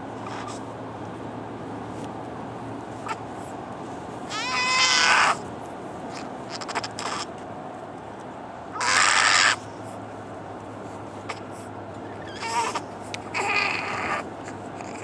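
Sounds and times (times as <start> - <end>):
car low hum: 0.0 - 15.0
person screeching: 4.3 - 5.4.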